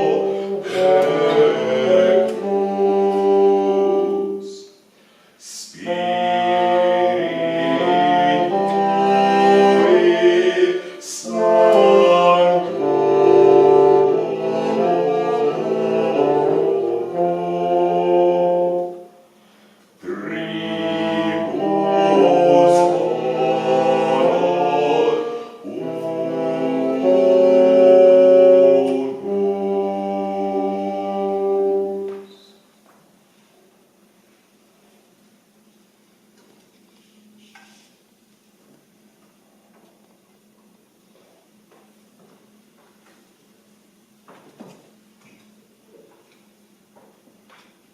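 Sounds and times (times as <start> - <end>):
early music trio playing: 0.0 - 33.7.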